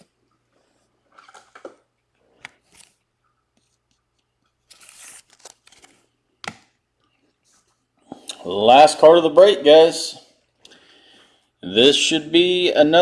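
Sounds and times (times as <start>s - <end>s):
card packaging rustling: 4.5s - 6.6s.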